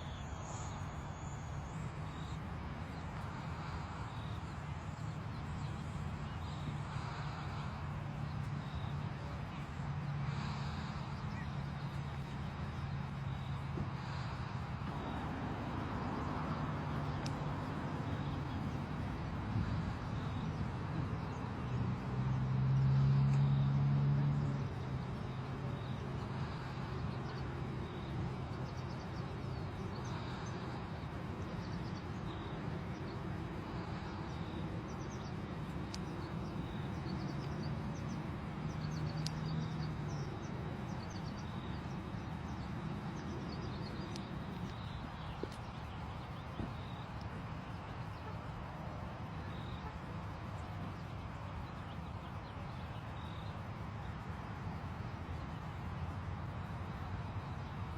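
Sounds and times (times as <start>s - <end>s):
faint bird chirps: 0.0s - 21.8s
low engine hum: 0.0s - 57.9s.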